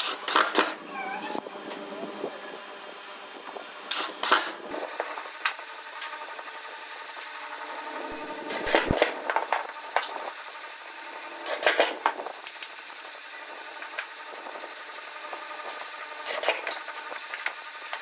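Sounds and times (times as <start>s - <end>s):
faint hum: 6.2s - 12.4s.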